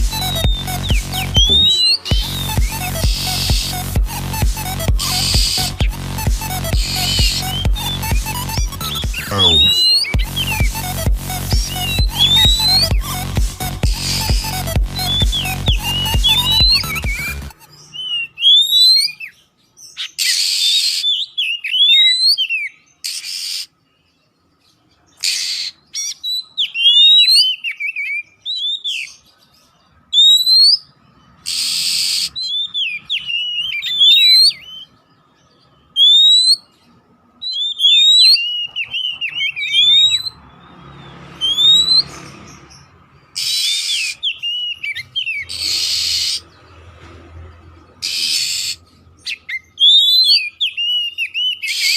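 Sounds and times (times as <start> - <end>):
bird singing whistled notes: 0.0 - 4.0, 4.6 - 24.2, 25.2 - 29.5, 30.1 - 35.0, 35.8 - 36.8, 37.4 - 42.1, 43.4 - 46.5, 48.0 - 51.9
harsh rasping bird notes: 0.0 - 19.2, 37.8 - 49.6.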